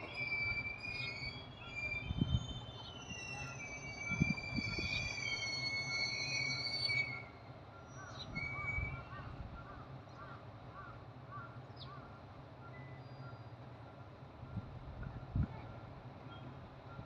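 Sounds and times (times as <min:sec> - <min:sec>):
wheels squealing: 0:00.0 - 0:07.3
diesel railcar engine humming: 0:00.0 - 0:17.0.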